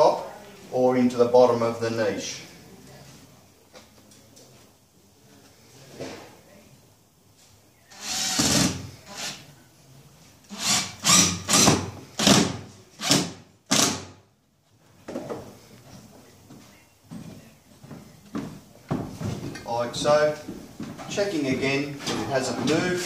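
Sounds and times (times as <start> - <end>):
power drill driving screw: 7.9 - 9.4, 10.5 - 14.1.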